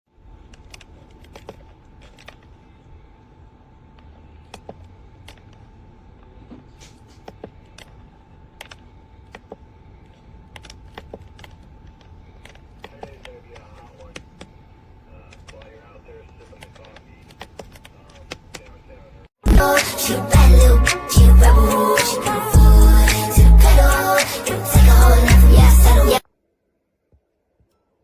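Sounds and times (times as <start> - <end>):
low hum: 19.5 - 26.2.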